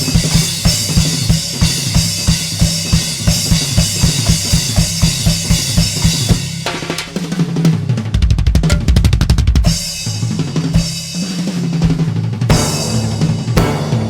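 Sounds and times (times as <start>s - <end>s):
fast drum roll: 0.0s - 14.0s
kick and snare drum strokes: 0.0s - 14.0s
cymbals: 12.5s - 14.0s.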